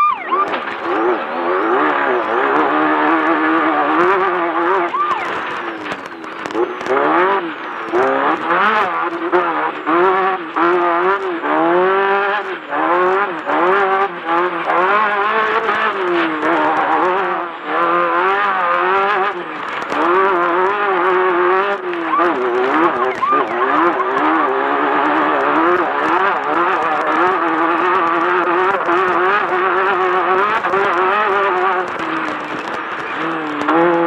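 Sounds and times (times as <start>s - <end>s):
buggy engine revving: 0.0s - 34.0s.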